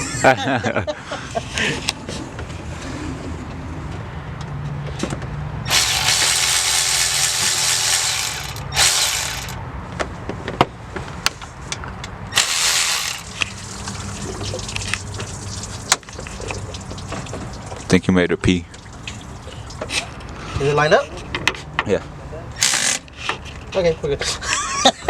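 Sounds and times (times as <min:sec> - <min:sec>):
sharp metallic clicks: 0:05.7 - 0:09.6.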